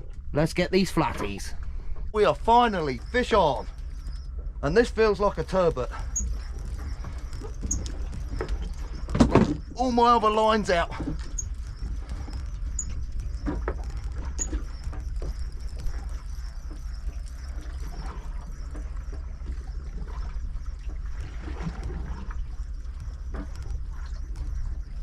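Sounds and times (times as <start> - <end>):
low rumble on a boat: 0.0 - 25.0
short squeaks: 5.8 - 9.8.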